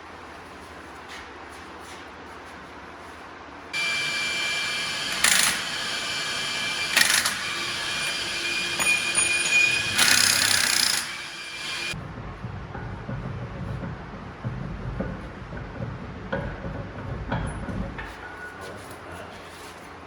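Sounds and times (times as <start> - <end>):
pneumatic impact wrench whine: 3.8 - 12.0.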